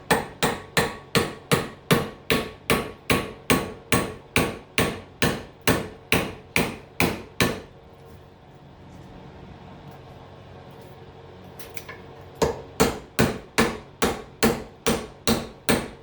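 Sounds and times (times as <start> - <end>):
hammer striking steel punch: 0.1 - 7.7, 12.4 - 16.0.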